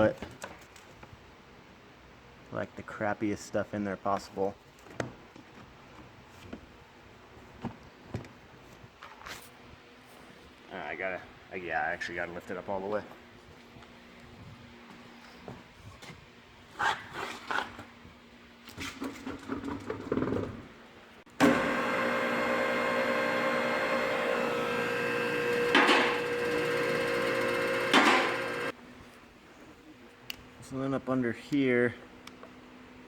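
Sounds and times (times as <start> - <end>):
hydraulic pump motor humming: 21.3 - 28.7.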